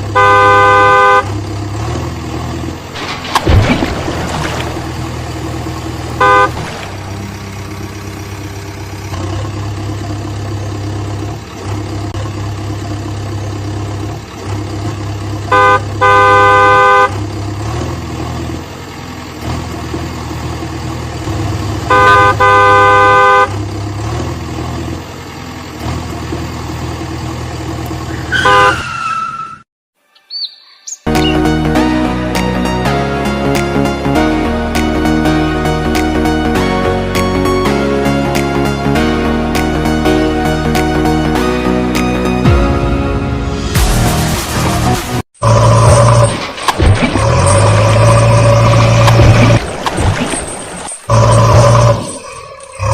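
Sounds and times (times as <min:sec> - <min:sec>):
cartoon vehicle horn honking: 0:00.0 - 0:01.4, 0:06.0 - 0:08.3, 0:15.4 - 0:17.2, 0:21.7 - 0:23.7, 0:28.1 - 0:30.2
low engine drone: 0:00.0 - 0:28.7, 0:31.1 - 0:52.9.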